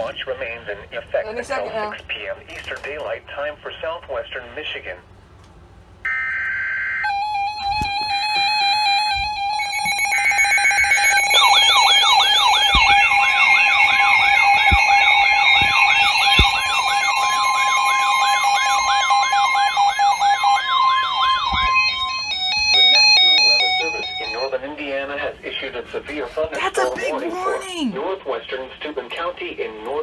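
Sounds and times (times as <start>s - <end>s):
warbling radio alarm: 6.1s - 24.6s
knocks: 11.3s - 16.9s.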